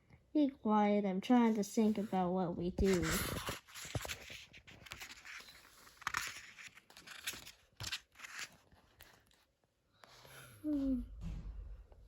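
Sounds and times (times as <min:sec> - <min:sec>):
paper rustling: 0:01.3 - 0:09.5.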